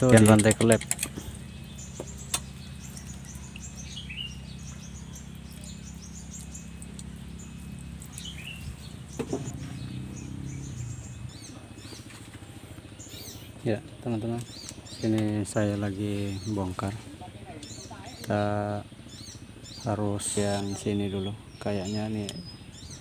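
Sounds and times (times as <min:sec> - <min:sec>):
small birds chirping: 0:00.0 - 0:23.0
steady low hum: 0:00.0 - 0:23.0.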